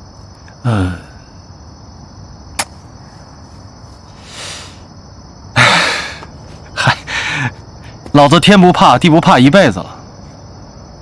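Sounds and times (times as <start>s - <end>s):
crickets chirring: 0.0s - 11.0s
person sighing: 0.6s - 1.3s, 5.6s - 6.2s
sharp click: 2.6s - 2.8s.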